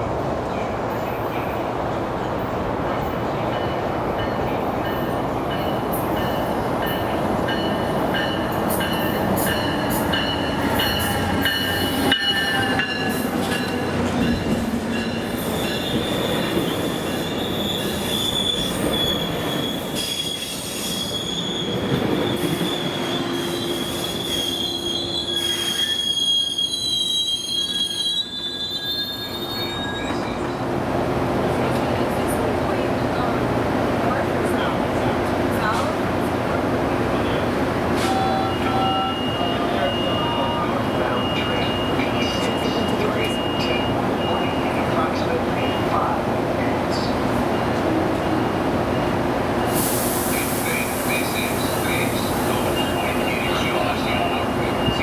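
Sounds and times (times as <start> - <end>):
train wheels squealing: 3.7 - 30.6, 38.0 - 46.2, 46.9 - 55.0.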